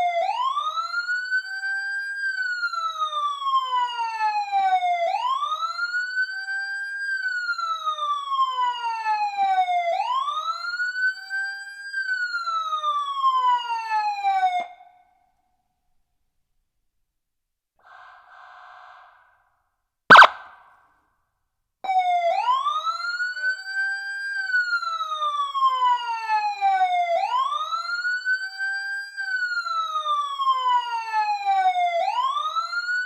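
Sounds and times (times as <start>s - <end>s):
electronic siren wailing: 20.1s - 20.5s.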